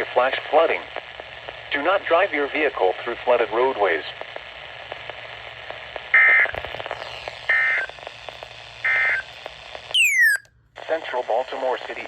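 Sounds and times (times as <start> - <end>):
faint static clicks: 0.0 - 1.8, 2.5 - 12.0
radio hiss: 0.0 - 10.0, 10.8 - 12.0
harsh warbling digital data bursts: 10.0 - 10.4.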